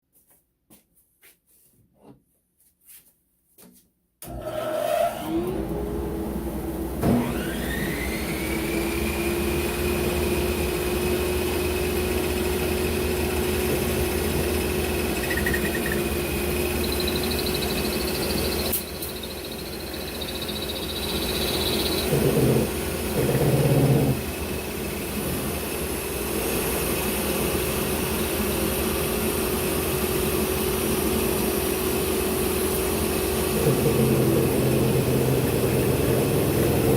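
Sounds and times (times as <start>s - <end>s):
table saw motor running: 7.1s - 28.6s, 32.9s - 36.9s.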